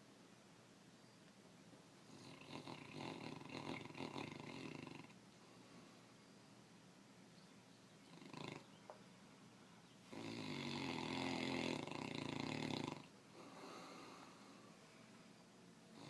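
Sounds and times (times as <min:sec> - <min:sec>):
person snoring: 0:02.1 - 0:05.1, 0:08.2 - 0:08.7, 0:10.1 - 0:14.6
snort: 0:02.1 - 0:05.2, 0:08.1 - 0:08.7, 0:10.1 - 0:14.6
soft breath: 0:05.3 - 0:06.5, 0:13.2 - 0:15.5.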